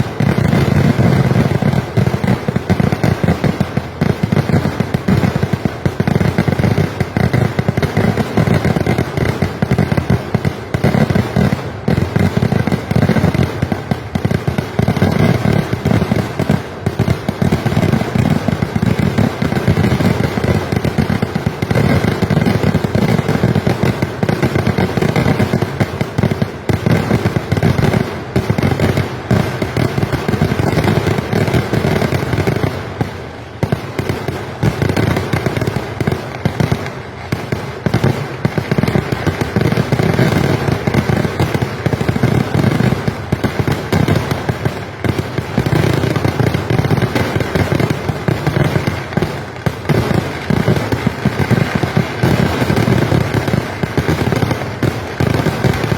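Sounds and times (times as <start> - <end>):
fireworks bangs and crackling: 0.0 - 55.9.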